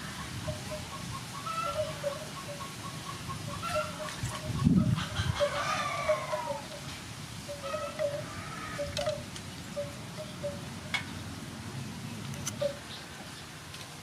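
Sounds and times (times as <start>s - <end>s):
poultry peeping: 0.1s - 6.7s
rooster crowing: 4.8s - 6.8s, 7.6s - 8.9s.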